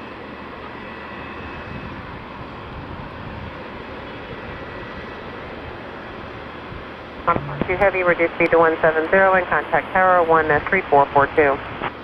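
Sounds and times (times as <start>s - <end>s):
jet engine noise: 1.0s - 12.0s
faint high whine: 7.3s - 12.0s.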